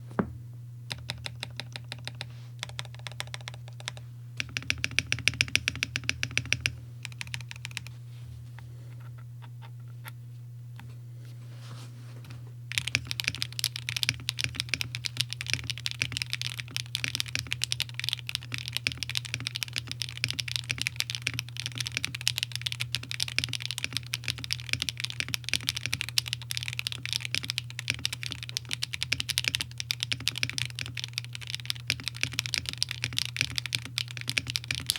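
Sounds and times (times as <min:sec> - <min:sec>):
typing on mechanical keyboard: 0:00.9 - 0:07.9, 0:12.7 - 0:34.9.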